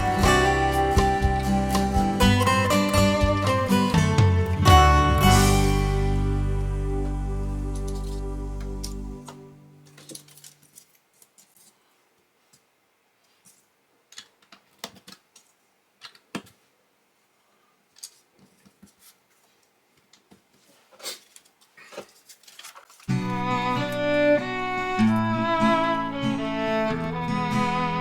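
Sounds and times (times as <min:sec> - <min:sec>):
music: 0:00.0 - 0:10.1, 0:23.1 - 0:28.0
plastic bricks clicking: 0:14.1 - 0:16.6.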